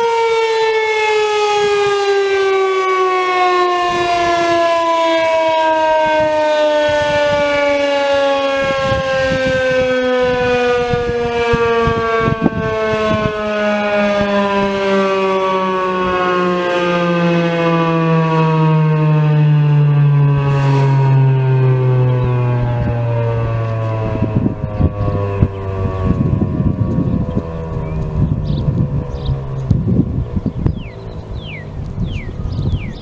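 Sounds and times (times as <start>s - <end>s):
warning siren winding down: 0.0s - 33.0s
low rumbling noise: 19.5s - 33.0s.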